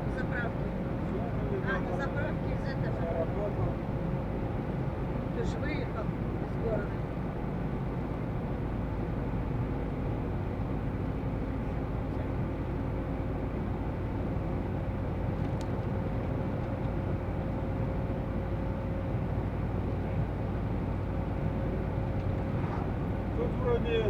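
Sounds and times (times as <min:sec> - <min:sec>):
van engine and road noise: 0:00.0 - 0:24.0
faint whine: 0:19.9 - 0:24.0.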